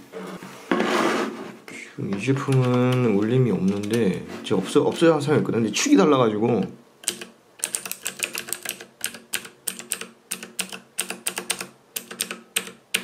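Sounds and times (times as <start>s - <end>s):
clicky mechanical keyboard typing: 2.4s - 4.2s, 7.0s - 13.0s.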